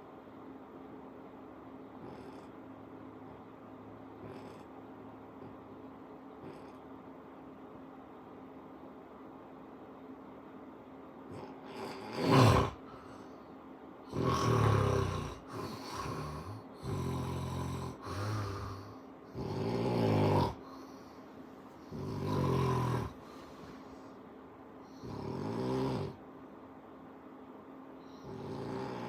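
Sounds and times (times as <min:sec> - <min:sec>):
snoring: 0:02.0 - 0:02.6, 0:04.2 - 0:04.7, 0:06.4 - 0:06.8, 0:11.3 - 0:13.1, 0:14.1 - 0:20.9, 0:21.8 - 0:23.7, 0:24.9 - 0:26.2, 0:28.1 - 0:29.0
sharp snort: 0:11.3 - 0:12.8, 0:14.1 - 0:20.6.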